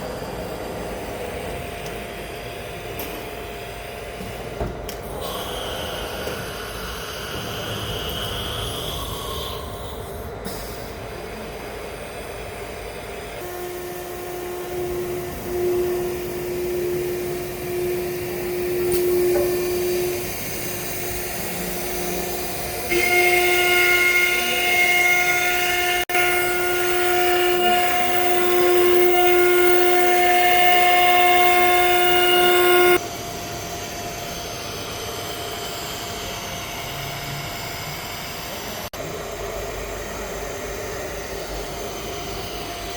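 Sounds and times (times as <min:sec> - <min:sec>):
router spindle whine: 0:13.4 - 0:42.9.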